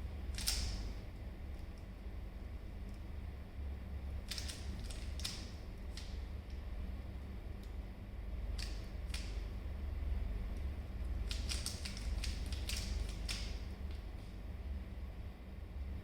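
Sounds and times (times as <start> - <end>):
low steady hum: 0.0 - 16.0
puzzle cube layers clicking: 11.3 - 13.6.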